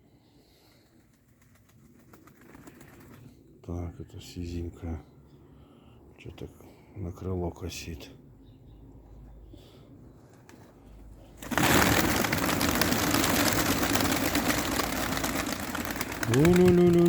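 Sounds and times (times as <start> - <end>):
dense clattering rustle: 11.4 - 17.0
man calling to pigeons: 16.0 - 17.0.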